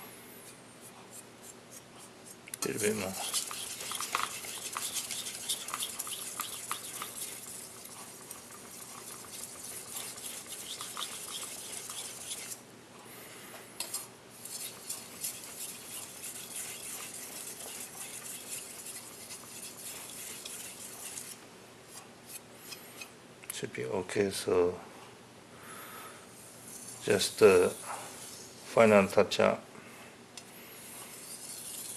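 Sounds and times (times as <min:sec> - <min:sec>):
knife scraping on whetstone: 0:01.1 - 0:12.6, 0:13.8 - 0:21.4, 0:30.8 - 0:31.9.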